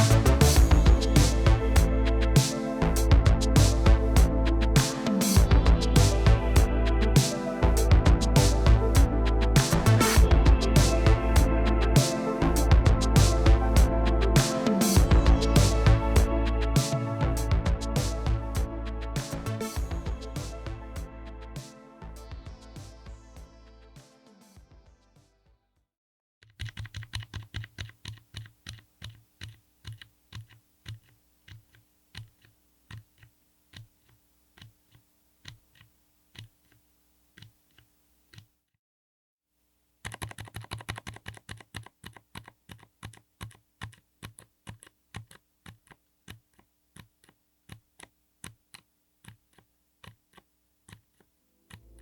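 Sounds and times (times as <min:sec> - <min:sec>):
soft muffled keyboard typing: 0:26.4 - 0:38.5, 0:40.0 - 0:52.0.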